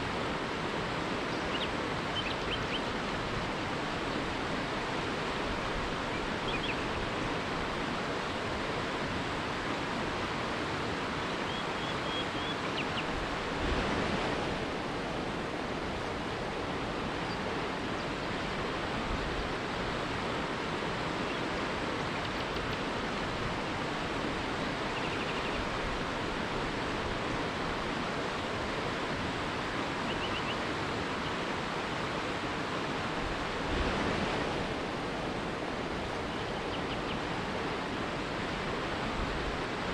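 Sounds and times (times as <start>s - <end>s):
river rapids rushing: 0.0s - 39.9s
faint bird chirps: 11.4s - 13.1s, 24.9s - 25.6s.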